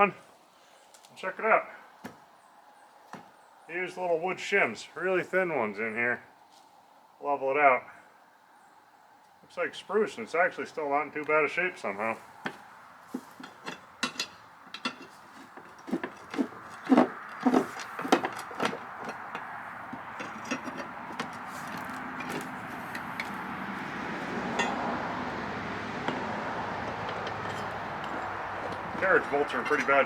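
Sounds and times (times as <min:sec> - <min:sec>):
wooden timbers and metal clattering: 0:12.4 - 0:30.0.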